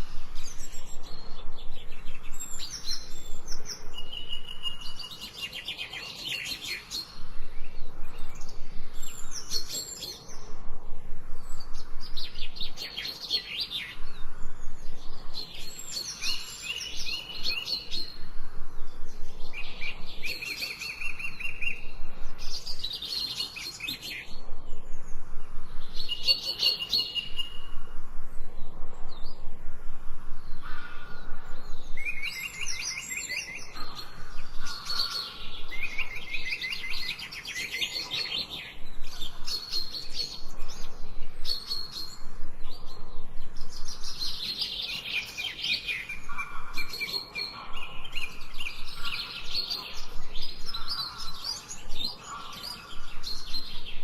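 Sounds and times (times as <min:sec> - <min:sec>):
songbird chirps and trills: 0:00.0 - 0:54.0.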